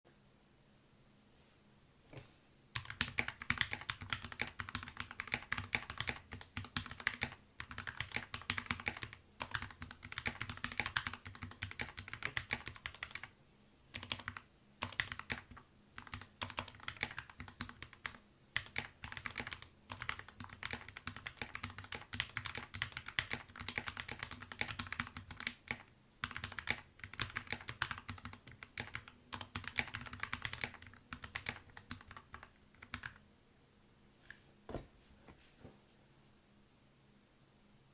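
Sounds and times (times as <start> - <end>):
fast typing on mechanical keyboard: 2.8 - 13.3, 13.9 - 33.2.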